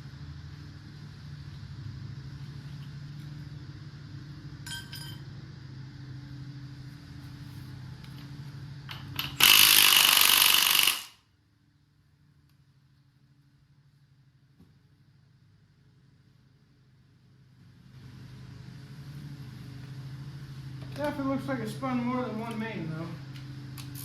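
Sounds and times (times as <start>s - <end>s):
steady low hum: 0.0s - 9.4s, 10.8s - 24.0s
metal part clinking: 4.7s - 5.2s
power tool burst: 9.2s - 11.2s.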